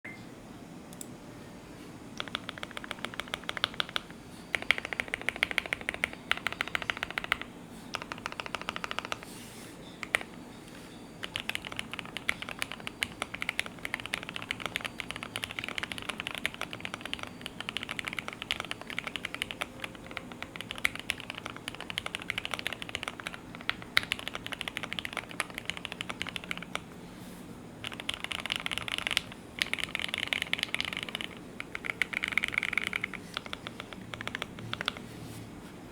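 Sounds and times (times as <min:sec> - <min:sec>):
mechanical keyboard keys clacking: 0:02.2 - 0:09.2, 0:11.2 - 0:26.8, 0:27.8 - 0:35.0.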